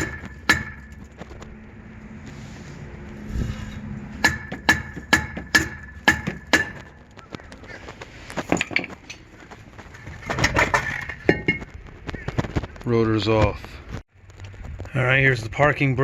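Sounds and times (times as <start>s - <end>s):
hammer striking metal rotor: 0.0s - 1.1s, 4.2s - 6.9s.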